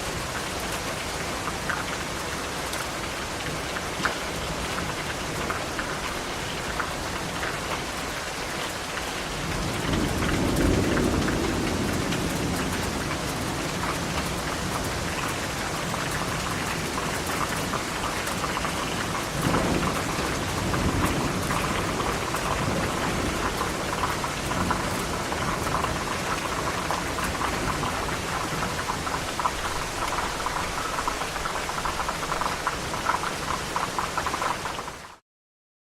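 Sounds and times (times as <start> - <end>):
steady rain falling: 0.0 - 35.2
low rumble of thunder: 9.4 - 17.8, 18.5 - 34.1.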